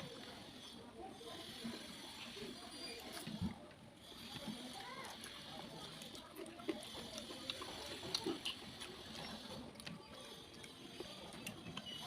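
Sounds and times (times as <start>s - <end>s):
chewing and mouth smacks: 6.0s - 12.0s.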